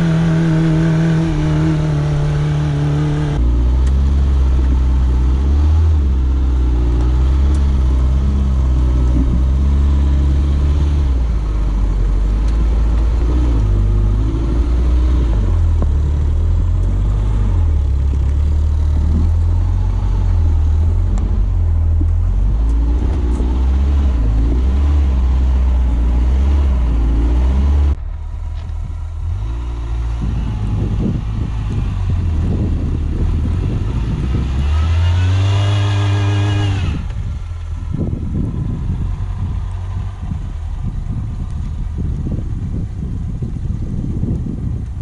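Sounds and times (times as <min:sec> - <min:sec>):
off-road vehicle engine running: 0:00.0 - 0:45.0.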